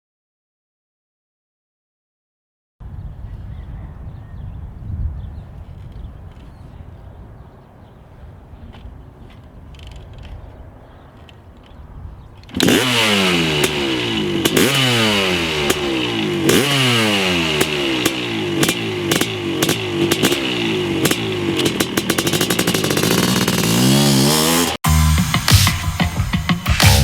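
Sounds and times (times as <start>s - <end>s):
two-stroke engine revving: 12.4s - 24.8s.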